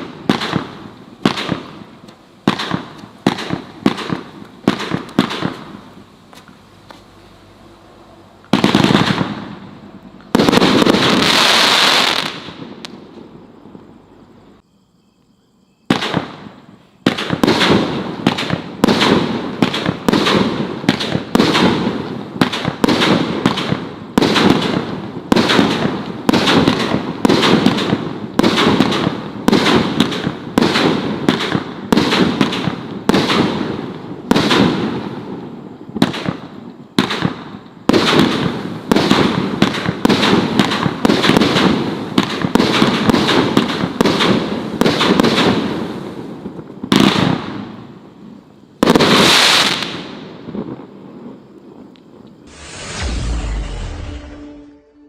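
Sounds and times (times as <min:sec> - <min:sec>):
firework shots: 0:00.0 - 0:07.5, 0:08.2 - 0:13.2, 0:15.9 - 0:47.8, 0:48.8 - 0:50.8, 0:52.4 - 0:54.8
firework burst: 0:08.1 - 0:12.9, 0:52.4 - 0:55.0.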